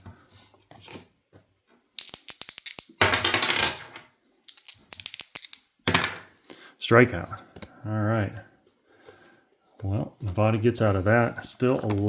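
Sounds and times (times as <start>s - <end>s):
dice clattering on a table: 2.0s - 6.3s.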